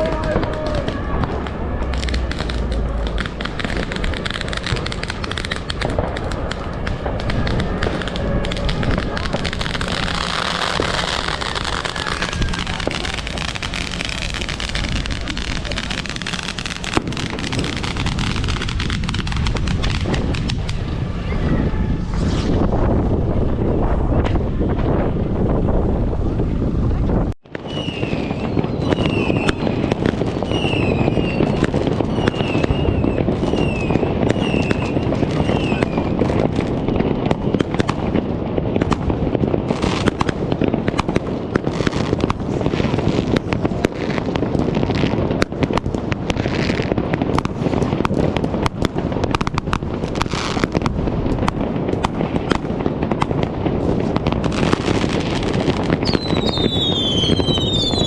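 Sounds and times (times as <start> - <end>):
wavering firework whistle: 0.0 - 19.3, 20.0 - 24.4, 27.5 - 37.8, 54.6 - 58.0
whistling fireworks screaming: 0.0 - 25.2, 27.4 - 58.0
fireworks and firecrackers crackling: 0.0 - 58.0.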